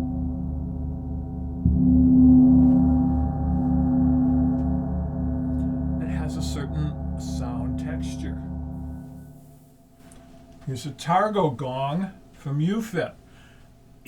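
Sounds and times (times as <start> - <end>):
gong ringing: 0.0 - 10.1.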